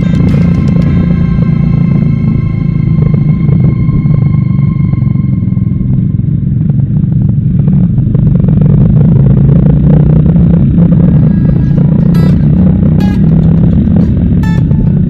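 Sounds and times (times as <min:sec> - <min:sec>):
rattling: 0:00.0 - 0:04.4, 0:10.8 - 0:15.0
car engine and road rumble: 0:00.0 - 0:15.0.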